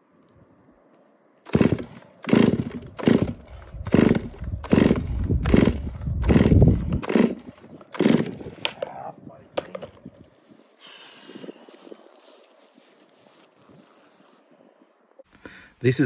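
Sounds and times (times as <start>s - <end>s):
chainsaw being pull-started: 1.5s - 8.7s.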